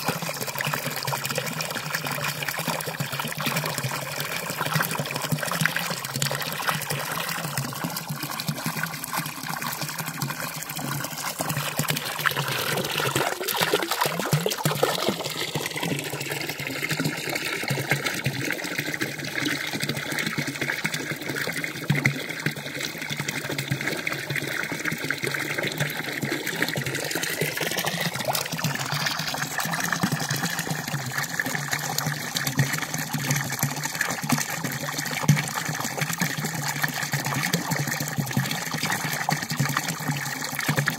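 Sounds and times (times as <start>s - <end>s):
water running from fountain spout: 0.0s - 40.9s.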